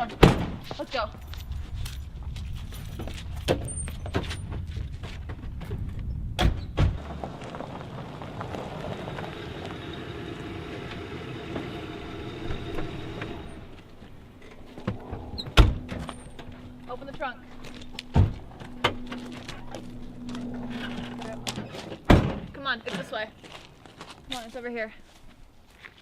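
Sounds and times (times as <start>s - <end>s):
motor vehicle running: 6.9s - 23.7s.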